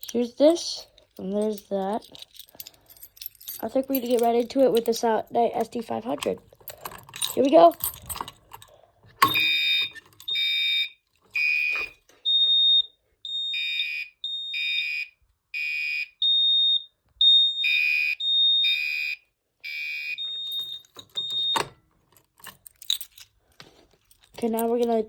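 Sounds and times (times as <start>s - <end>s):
high beeping alarm tone: 9.3s - 21.6s
buzzy fire alarm horn: 9.4s - 21.6s.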